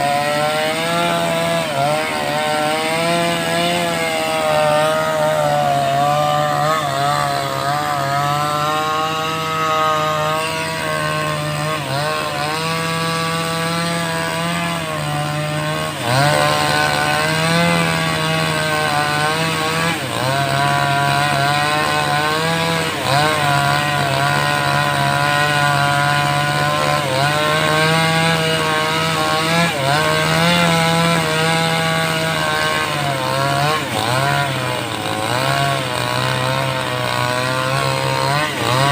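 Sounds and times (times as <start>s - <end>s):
chainsaw cutting log: 0.0s - 38.9s.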